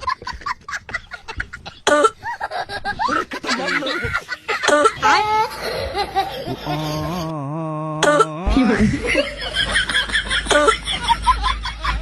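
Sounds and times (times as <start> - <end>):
person coughing: 1.8 - 2.2, 8.0 - 9.1.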